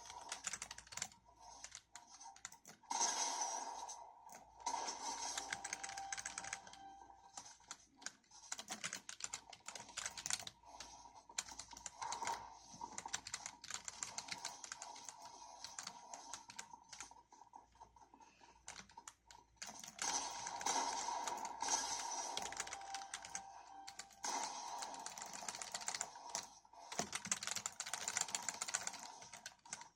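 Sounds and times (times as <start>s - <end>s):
mechanical keyboard typing: 0.0s - 2.8s, 5.1s - 17.1s, 18.6s - 29.9s.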